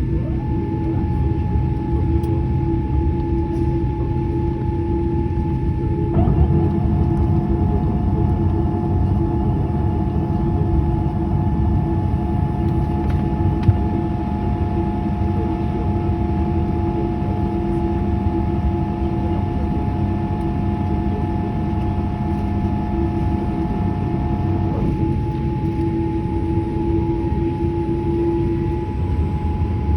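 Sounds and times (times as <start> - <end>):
aircraft cabin rumble: 0.0 - 29.9
steady whine: 0.0 - 29.9.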